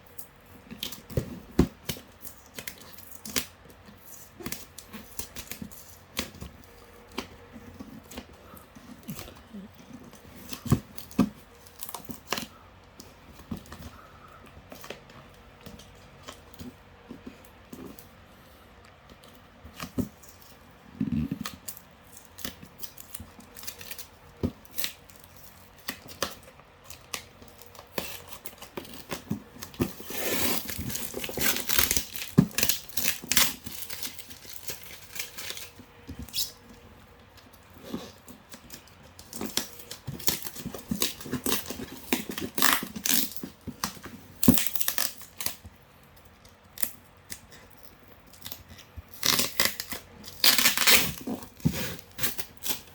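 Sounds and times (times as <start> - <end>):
tape and cardboard tearing: 21.1 - 36.7, 37.8 - 45.6, 48.3 - 52.9.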